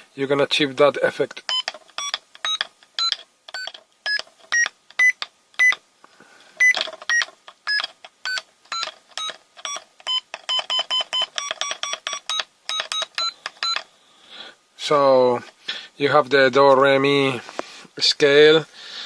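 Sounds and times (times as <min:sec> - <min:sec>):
piezo buzzer beeping notes: 0:01.5 - 0:05.8, 0:06.6 - 0:13.8.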